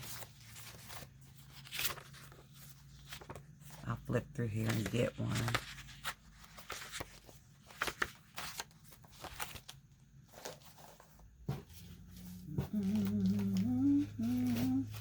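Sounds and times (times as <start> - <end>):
paper rustling and flicking: 0.0 - 15.0
low steady hum: 9.1 - 15.0.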